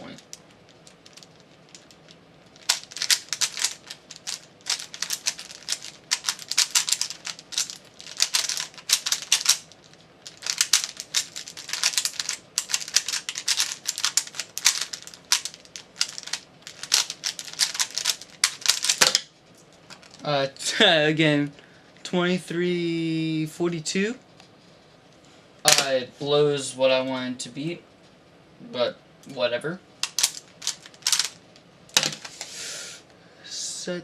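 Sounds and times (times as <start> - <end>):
puzzle cube layers clicking: 2.6 - 9.6, 10.3 - 19.1.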